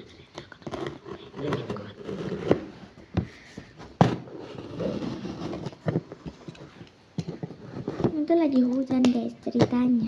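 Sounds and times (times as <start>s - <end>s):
box knocking and clattering: 0.9s - 6.6s, 7.2s - 8.2s.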